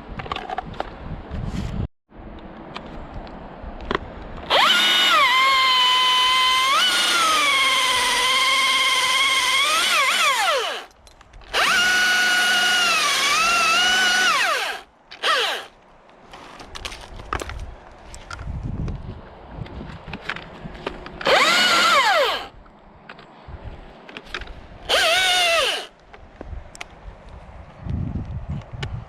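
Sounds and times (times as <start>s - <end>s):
chainsaw revving: 4.5s - 10.9s, 11.5s - 15.7s, 21.2s - 22.5s, 24.9s - 25.9s
chainsaw cutting wood: 4.5s - 15.7s, 21.2s - 22.5s, 24.9s - 25.9s.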